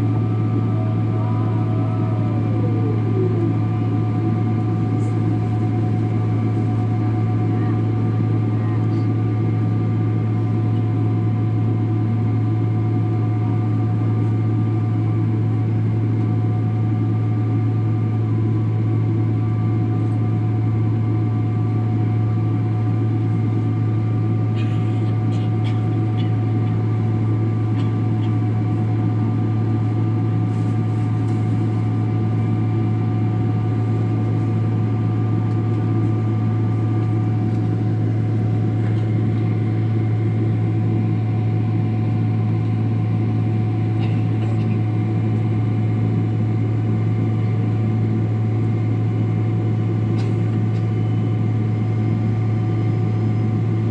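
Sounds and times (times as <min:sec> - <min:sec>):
steady whining tones: 0:00.0 - 0:09.1
airliner cabin droning hum: 0:00.0 - 0:53.9.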